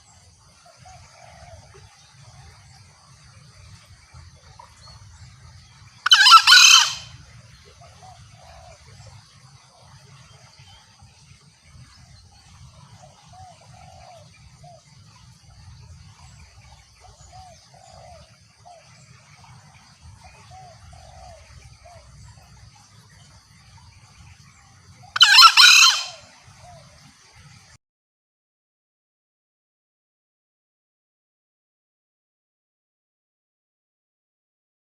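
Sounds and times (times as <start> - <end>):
junglefowl soft calling notes: 5.6 - 9.2, 16.1 - 23.2, 25.0 - 27.0
junglefowl harsh crow: 6.0 - 7.1, 25.2 - 26.3.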